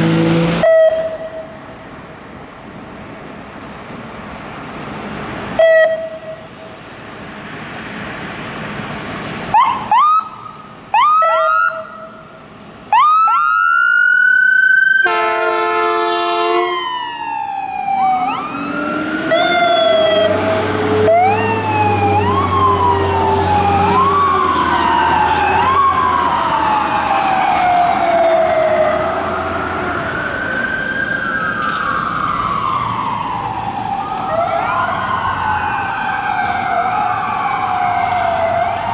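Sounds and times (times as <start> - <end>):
sirens wailing: 0.0 - 1.6, 5.5 - 6.6, 9.5 - 38.9
air horn: 15.0 - 16.8
manual siren chirps: 16.6 - 29.1.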